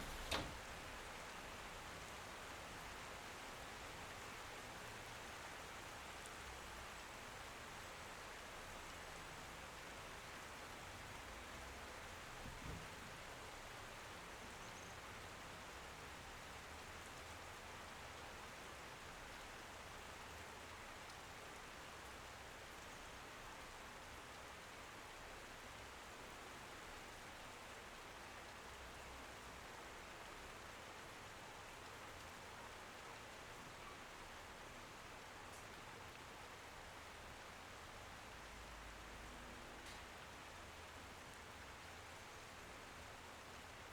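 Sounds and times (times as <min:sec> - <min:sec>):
steady rain falling: 0:00.0 - 0:43.9.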